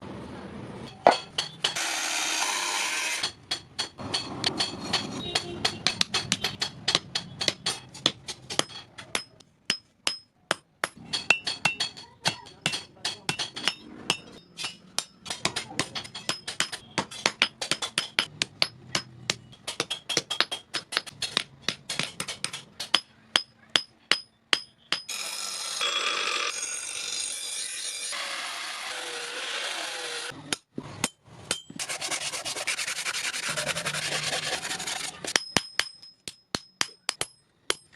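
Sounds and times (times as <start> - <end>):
hammer striking steel on anvil: 0.9 - 1.9, 3.1 - 25.2, 30.5 - 31.8, 35.2 - 37.9
steady rasping noise: 31.8 - 35.3.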